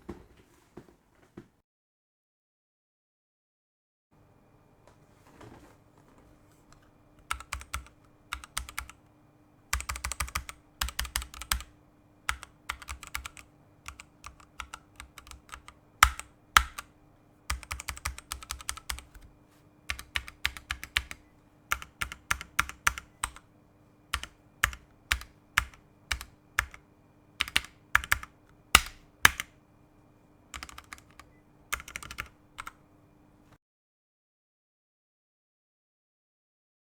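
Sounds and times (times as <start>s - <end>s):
mechanical keyboard typing: 6.7s - 9.0s, 9.7s - 16.9s, 17.5s - 23.5s, 24.1s - 26.8s, 27.4s - 29.6s, 30.5s - 32.8s.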